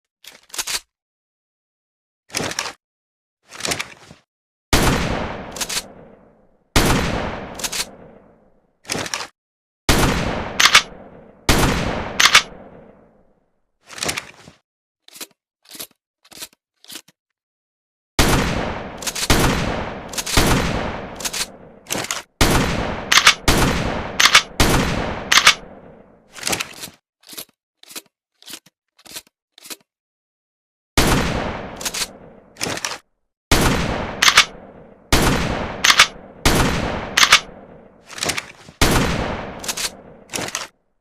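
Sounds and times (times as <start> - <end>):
loud shotgun shots: 4.8 - 6.2, 6.8 - 8.2, 9.9 - 12.9, 18.2 - 21.8, 22.4 - 26.0, 31.0 - 32.4, 33.5 - 37.9, 38.8 - 40.6
shotgun slide racking clacks: 10.6 - 10.9, 12.2 - 12.5, 21.2 - 22.3, 23.1 - 23.4, 24.2 - 24.5, 25.3 - 25.6, 31.8 - 33.0, 34.2 - 34.5, 35.8 - 36.2, 37.2 - 37.5, 39.6 - 40.7.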